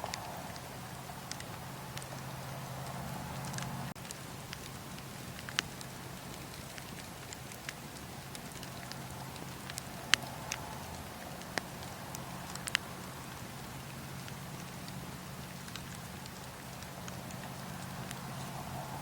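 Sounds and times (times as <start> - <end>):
wood fire crackling: 0.0 - 19.0.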